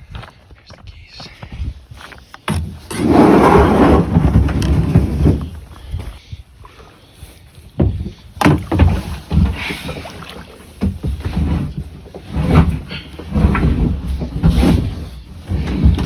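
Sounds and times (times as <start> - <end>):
kayak paddle strokes splashing: 8.4 - 12.0.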